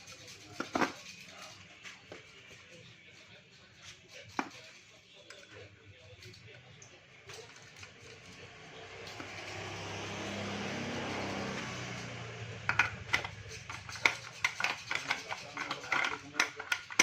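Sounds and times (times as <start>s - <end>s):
vehicle passing: 8.0s - 13.9s.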